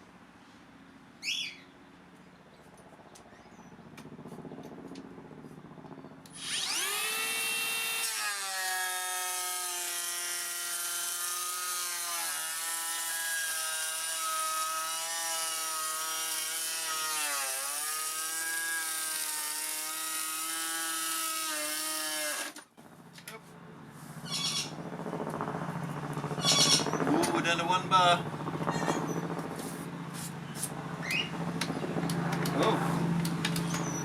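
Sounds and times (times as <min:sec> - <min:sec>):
electric planer whining: 0:06.3 - 0:22.6.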